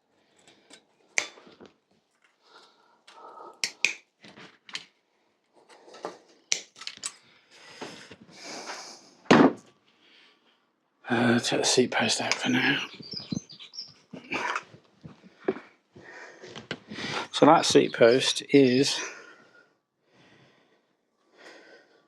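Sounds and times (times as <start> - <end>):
cable cutters snipping: 3.6 - 4.0.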